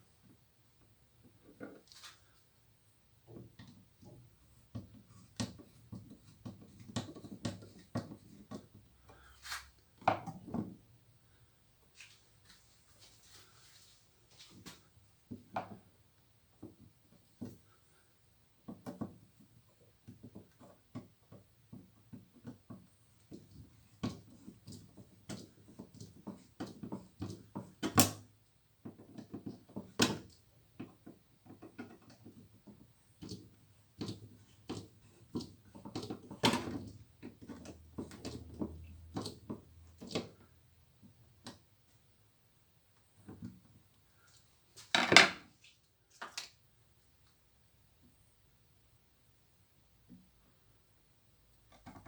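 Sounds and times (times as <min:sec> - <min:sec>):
tools clicking and knocking on workbench: 0:44.9 - 0:45.5.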